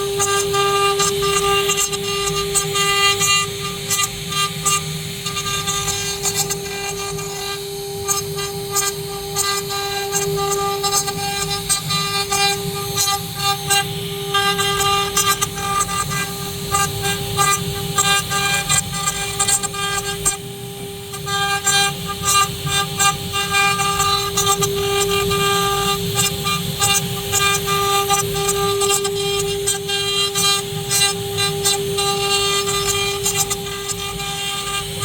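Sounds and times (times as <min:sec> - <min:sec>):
wood router spindles whining: 0:00.0 - 0:35.0
bits cutting wood chatter: 0:00.2 - 0:13.8, 0:21.2 - 0:35.0.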